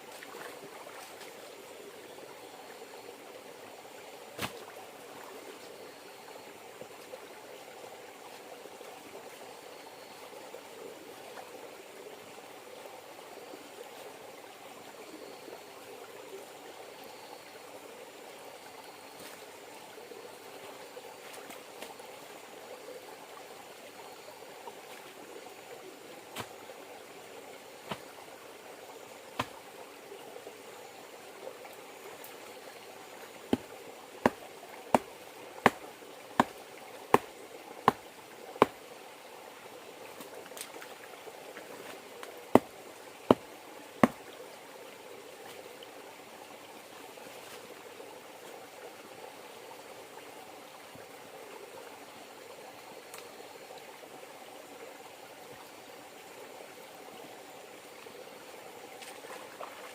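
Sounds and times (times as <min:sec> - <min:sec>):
river water running: 0:00.0 - 0:59.9.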